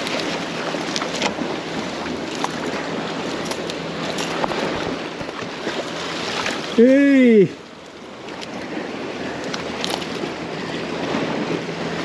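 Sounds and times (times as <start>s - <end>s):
waves on rocky shore: 0.0s - 12.0s.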